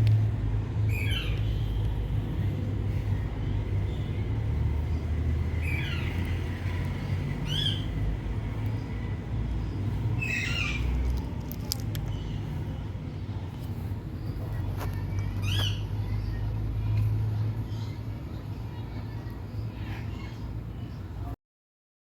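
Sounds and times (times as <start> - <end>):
parrot calls: 10.2 - 10.9.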